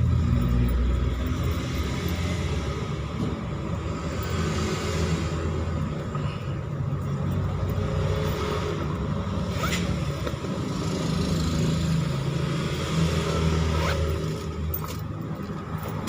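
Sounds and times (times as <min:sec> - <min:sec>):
vehicle engine rumbling: 0:00.0 - 0:16.0.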